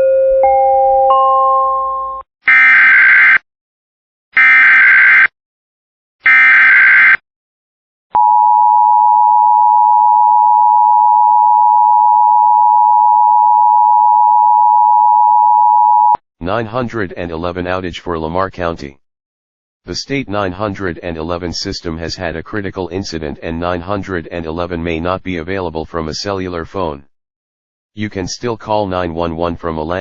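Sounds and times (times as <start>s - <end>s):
chime: 0.0s - 2.2s.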